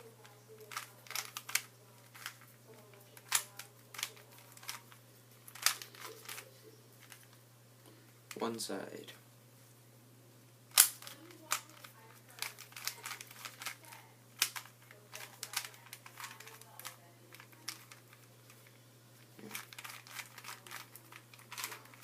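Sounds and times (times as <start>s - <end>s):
steady low hum: 0.0s - 22.0s
plastic puzzle cube clicking: 0.7s - 2.4s, 3.2s - 4.8s, 5.5s - 6.4s, 10.7s - 13.8s, 14.4s - 18.0s, 19.5s - 22.0s.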